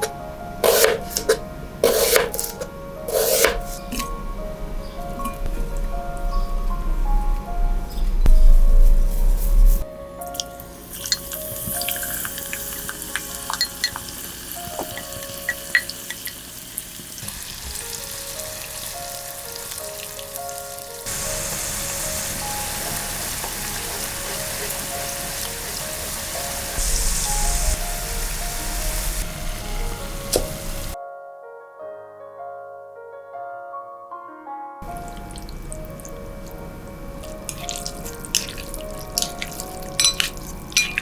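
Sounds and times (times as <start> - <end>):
background music: 0.0 - 41.0
food sizzling in hot oil: 10.9 - 31.0, 34.8 - 36.6, 37.2 - 41.0
kitchen clicks and clinks: 37.2 - 41.0.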